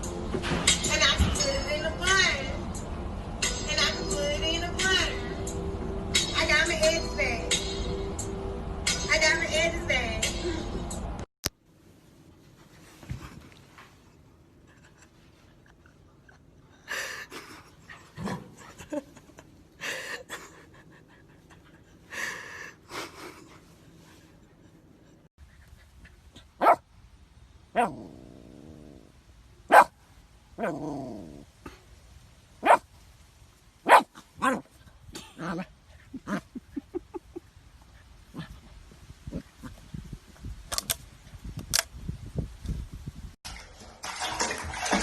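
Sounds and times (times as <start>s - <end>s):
dog barking: 26.6s - 26.8s, 29.7s - 30.0s, 32.6s - 32.9s, 33.8s - 34.6s.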